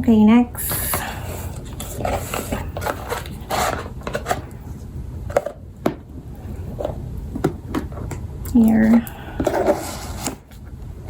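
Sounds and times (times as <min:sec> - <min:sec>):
paper rustling: 0:01.5 - 0:04.5.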